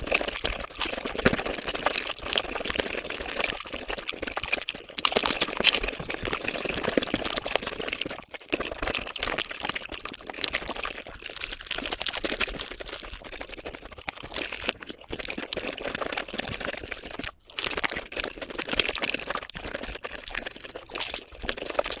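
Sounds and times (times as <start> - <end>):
sped-up wet chewing and slurping: 0.0 - 22.0.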